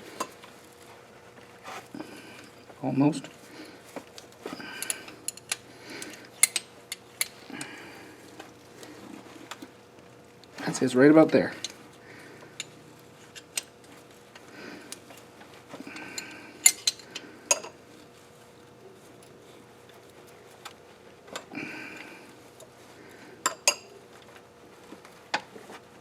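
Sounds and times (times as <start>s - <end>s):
hand tools clicking and clinking: 4.1s - 7.8s.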